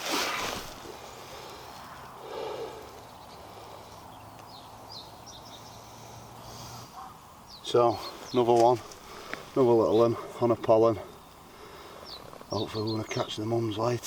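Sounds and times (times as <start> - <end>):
faint bird chirps: 9.7 - 14.0.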